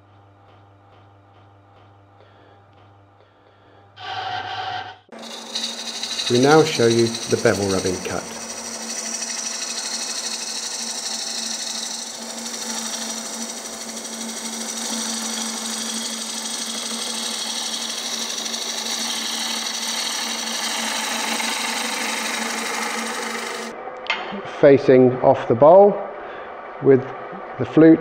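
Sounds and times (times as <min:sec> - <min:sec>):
lathe humming: 0:04.0 - 0:23.8
hiss of wood being cut: 0:05.2 - 0:23.7.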